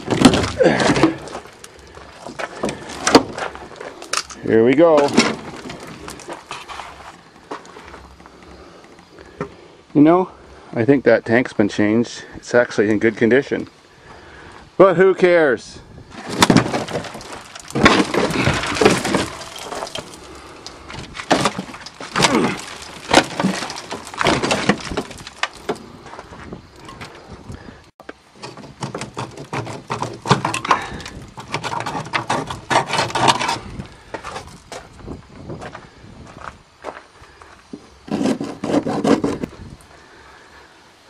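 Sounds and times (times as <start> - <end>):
metal scraping: 38.0 - 39.5.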